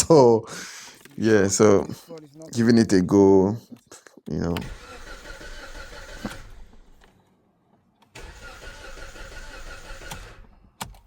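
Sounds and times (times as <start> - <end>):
starter motor cranking engine: 4.6 - 7.0, 8.2 - 10.6.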